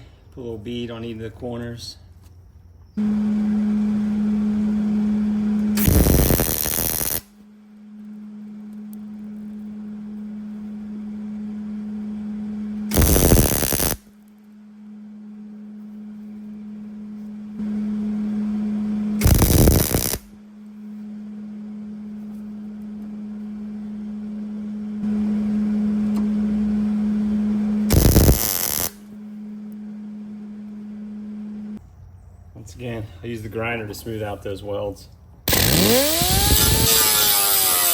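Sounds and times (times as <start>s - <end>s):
welding machine hum: 3.0s - 7.4s, 8.0s - 14.4s, 15.2s - 31.8s, 35.5s - 37.9s
welding crackle: 5.8s - 7.4s, 12.9s - 14.1s, 19.2s - 20.3s, 27.9s - 29.0s, 35.5s - 37.9s.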